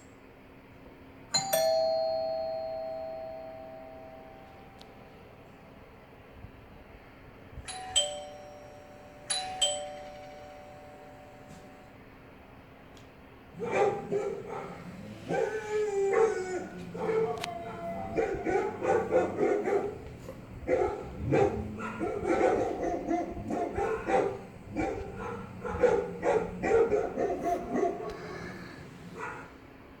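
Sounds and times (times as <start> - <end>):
dogs barking: 13.6 - 29.6.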